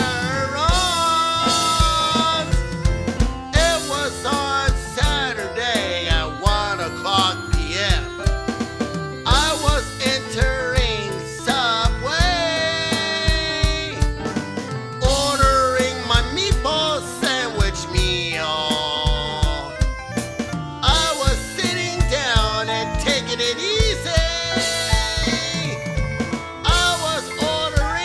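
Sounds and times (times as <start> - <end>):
song with sung vocal: 0.0 - 28.0
steady drum beat: 0.0 - 28.0.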